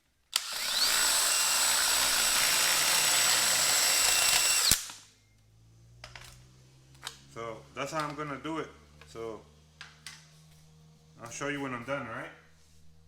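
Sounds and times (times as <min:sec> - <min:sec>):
power grinder whining into plastic: 0:00.3 - 0:05.0.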